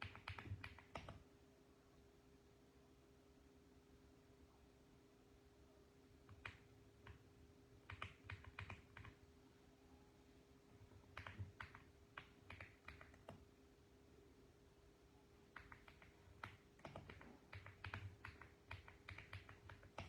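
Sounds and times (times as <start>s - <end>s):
mechanical keyboard typing: 0.0s - 1.2s, 6.3s - 7.2s, 7.8s - 9.2s, 10.8s - 13.4s, 15.5s - 20.0s
faint steady hum: 0.0s - 20.0s.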